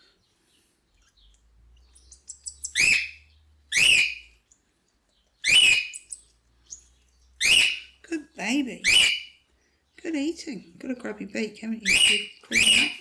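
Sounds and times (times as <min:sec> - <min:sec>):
bird chick begging calls: 0:02.1 - 0:04.3, 0:05.4 - 0:06.2, 0:07.4 - 0:08.0, 0:08.8 - 0:09.3, 0:11.8 - 0:13.0.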